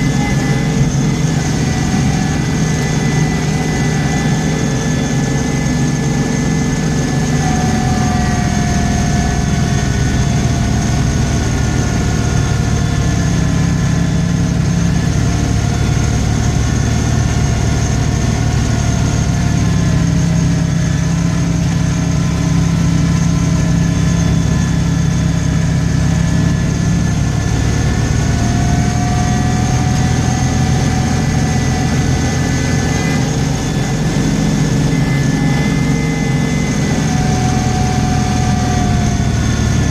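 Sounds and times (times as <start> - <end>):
high whine: 0.0 - 39.9
vehicle engine running: 0.0 - 39.9.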